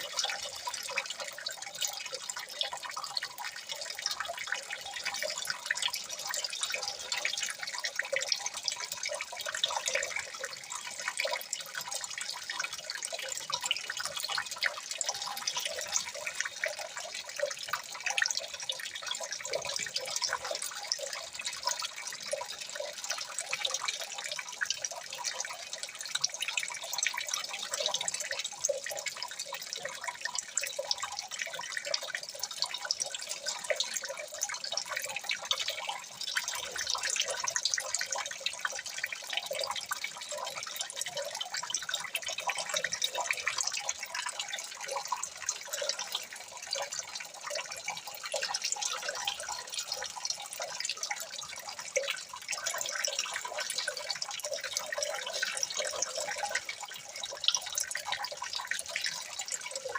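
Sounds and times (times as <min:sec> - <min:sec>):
water trickling and dripping: 0:00.0 - 0:59.9.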